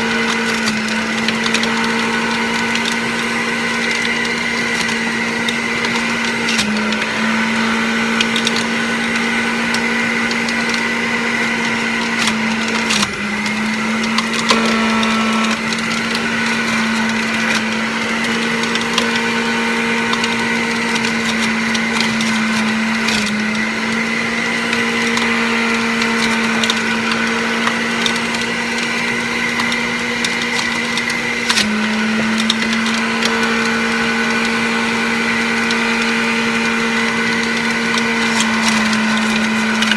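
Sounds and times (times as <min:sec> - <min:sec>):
juicer motor running: 0:00.0 - 0:39.9
produce being shredded crackling: 0:14.0 - 0:19.0.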